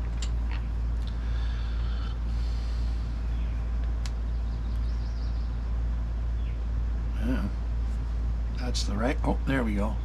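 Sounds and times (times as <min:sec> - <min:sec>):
steady low hum: 0:00.0 - 0:10.0
faint clicks: 0:03.8 - 0:04.9.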